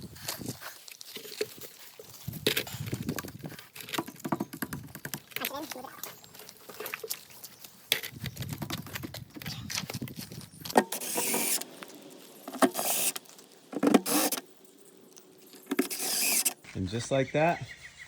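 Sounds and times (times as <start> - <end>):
harsh tool scrapes: 10.7 - 14.5, 15.6 - 16.6.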